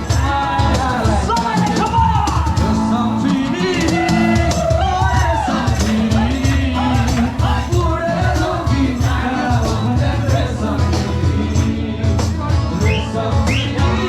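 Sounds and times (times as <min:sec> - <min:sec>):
song with singing voice: 0:00.0 - 0:14.0
steady drum beat and bass: 0:00.0 - 0:14.0.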